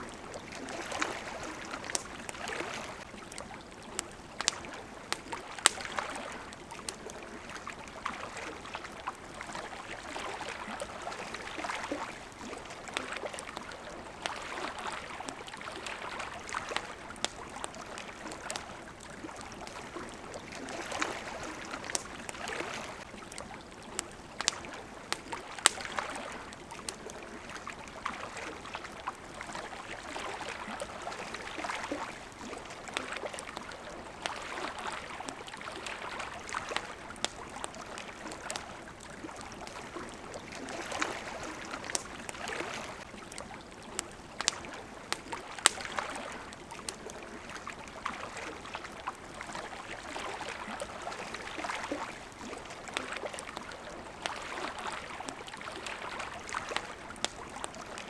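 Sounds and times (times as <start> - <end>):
campfire crackling and popping: 0.0 - 58.0
water washing in swells: 0.0 - 58.0.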